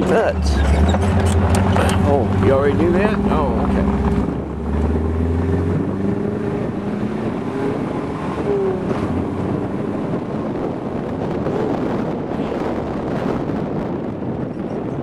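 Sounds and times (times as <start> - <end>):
car engine running: 0.0 - 14.9
wind buffeting microphone: 0.0 - 15.0.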